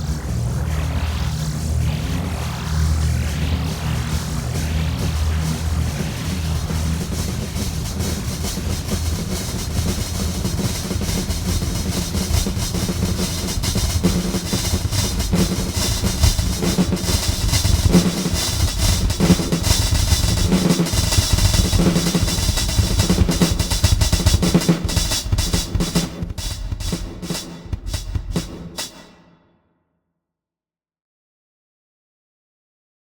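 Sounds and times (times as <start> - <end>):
low bass: 0.0 - 28.6
drum kit beat: 3.2 - 29.4.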